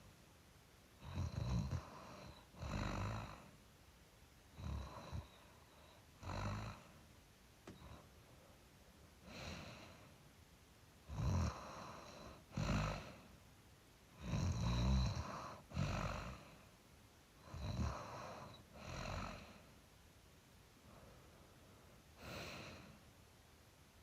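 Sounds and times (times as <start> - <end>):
person snoring: 11.1 - 13.2, 14.2 - 16.6, 17.4 - 19.6.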